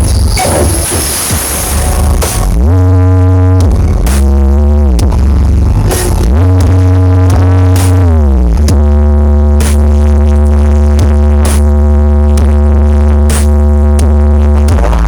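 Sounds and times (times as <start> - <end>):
cymbal crash: 0.0 - 2.6
electronic dance music: 0.0 - 2.8
heavy bass: 0.0 - 15.0.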